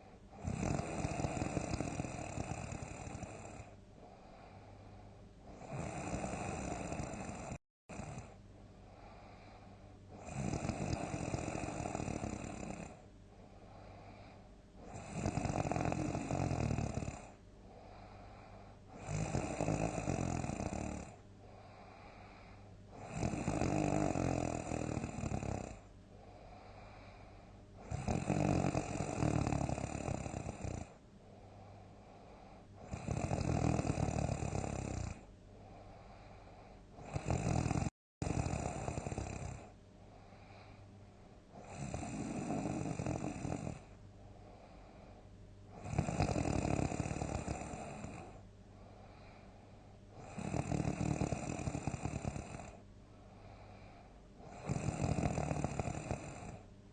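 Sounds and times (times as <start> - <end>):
person snoring loudly: 0.0 - 4.6, 5.5 - 8.4, 9.0 - 13.0, 14.8 - 18.2, 18.9 - 25.9, 27.8 - 31.0, 32.8 - 35.3, 37.0 - 39.7, 41.6 - 43.9, 45.7 - 48.4, 50.2 - 52.8, 54.4 - 56.6
quiet breathing: 0.0 - 56.9.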